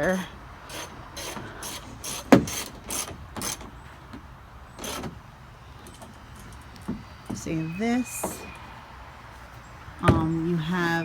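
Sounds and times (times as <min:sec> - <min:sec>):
ratchet wrench rasping: 0:00.0 - 0:03.7.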